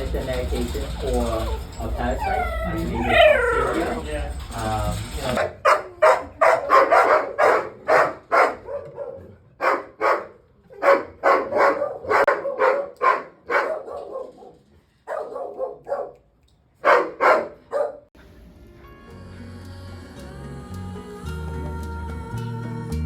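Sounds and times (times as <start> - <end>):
dog barking: 5.4 - 18.1.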